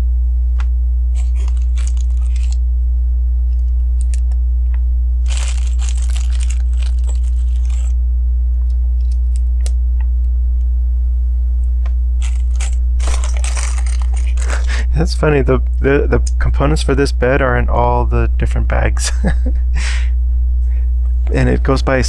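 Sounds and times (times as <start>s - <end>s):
steady low hum: 0.0s - 22.0s
plastic bags rustling: 1.2s - 2.6s, 5.2s - 8.0s, 12.2s - 14.9s
plastic pieces clicking and rattling: 1.2s - 2.6s, 4.0s - 4.2s, 5.3s - 7.9s, 12.2s - 14.7s.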